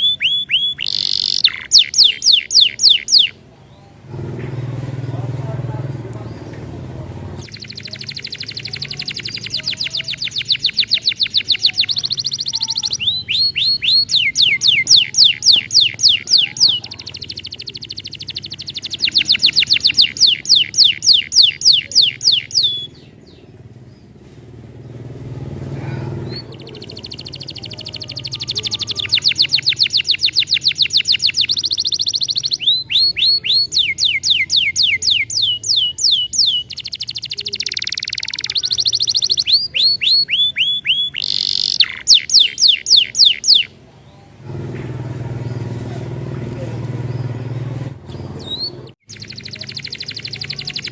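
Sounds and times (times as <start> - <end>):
canary singing trills: 0.0 - 4.1, 7.4 - 24.2, 24.8 - 50.9.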